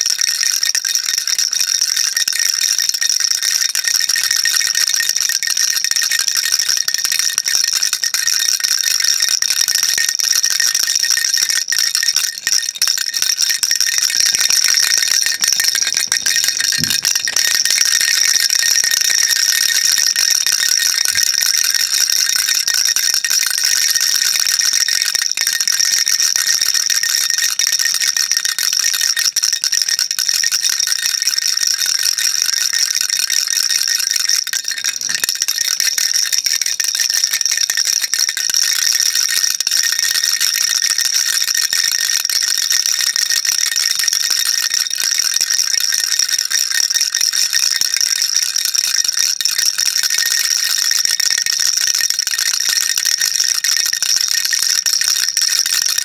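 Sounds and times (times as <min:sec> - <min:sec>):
baby rattle shaking: 0:01.3 - 0:39.4.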